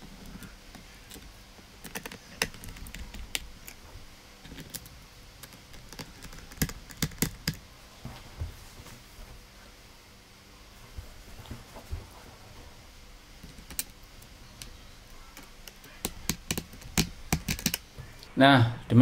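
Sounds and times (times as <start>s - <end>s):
screwdriver clicking on plastic: 1.8s - 3.8s, 4.5s - 7.6s, 14.6s - 17.8s.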